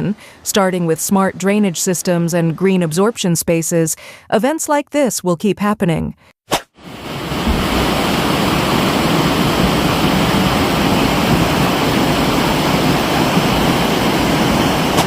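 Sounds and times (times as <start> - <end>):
rushing water: 6.8 - 15.0.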